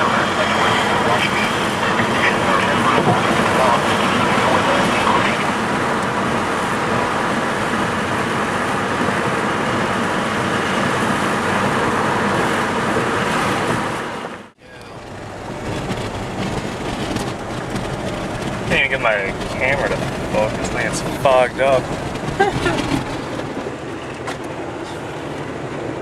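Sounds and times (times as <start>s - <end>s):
strong wind blowing: 0.0s - 26.0s.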